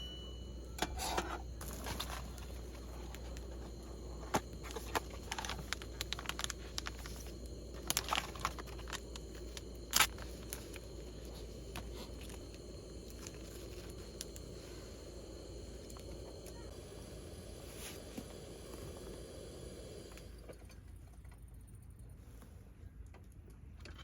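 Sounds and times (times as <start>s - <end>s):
outdoor background hiss: 0.0s - 21.8s
small clicks and crackles: 1.6s - 14.5s.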